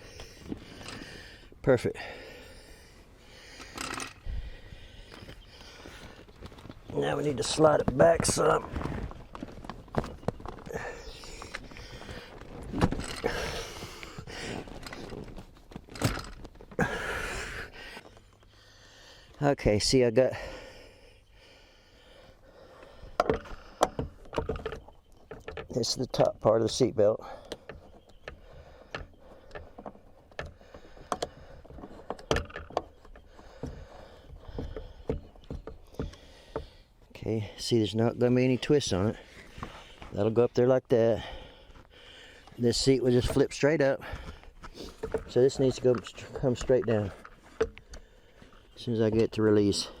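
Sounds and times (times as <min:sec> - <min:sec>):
seat scraping and rustling: 0:05.9 - 0:16.8
seat belt hardware clicks: 0:14.0 - 0:16.6.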